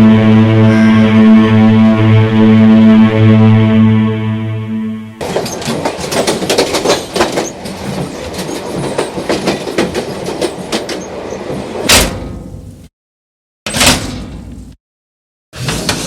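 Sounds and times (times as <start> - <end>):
clatter of clicks and rattles: 5.2 - 11.1.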